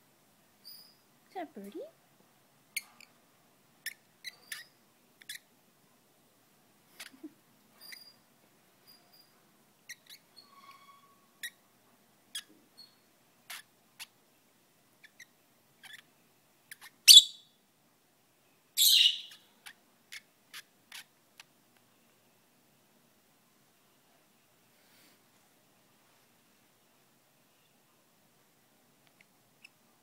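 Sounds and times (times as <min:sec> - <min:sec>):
bird chirp: 0:00.6 - 0:01.1, 0:03.8 - 0:05.5, 0:07.0 - 0:08.2, 0:08.8 - 0:10.6, 0:12.3 - 0:14.1, 0:16.7 - 0:17.6, 0:18.4 - 0:21.1.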